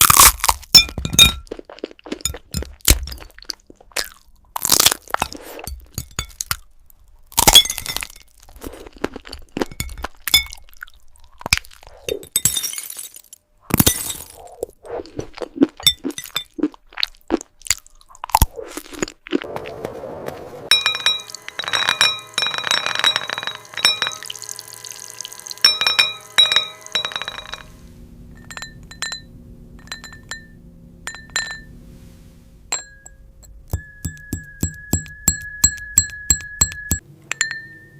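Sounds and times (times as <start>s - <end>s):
brittle glass cracking: 0.0s - 1.5s, 7.3s - 10.8s, 11.4s - 14.4s
glassy clinks and taps: 0.7s - 1.4s, 5.7s - 6.6s, 25.6s - 31.8s, 32.7s - 37.9s.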